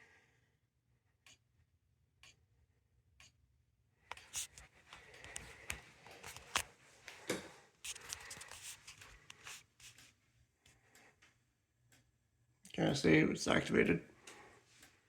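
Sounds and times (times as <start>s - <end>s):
faint rustling and handling noise: 4.1s - 12.0s, 12.7s - 15.0s
sharp clicks and taps: 4.1s - 12.1s.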